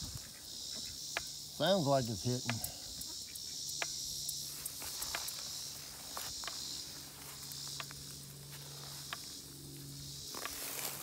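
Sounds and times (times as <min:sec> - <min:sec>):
crickets chirring: 0:00.0 - 0:11.0.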